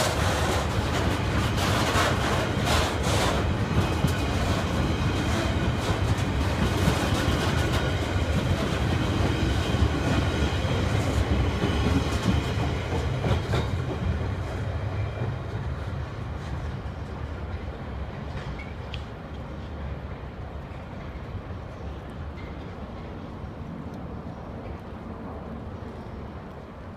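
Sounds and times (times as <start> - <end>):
wheels clicking over rail joints: 0.0 - 14.6
train rumbling past: 0.0 - 26.9.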